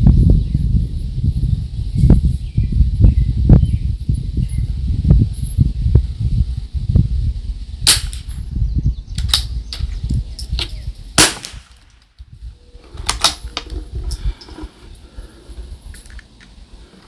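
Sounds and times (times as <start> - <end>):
wind rumble on microphone: 0.0 - 17.0
rifle shots: 11.2 - 11.9.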